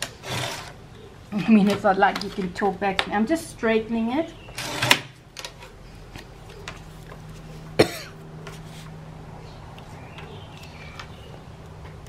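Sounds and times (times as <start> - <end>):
person coughing: 7.8 - 8.2.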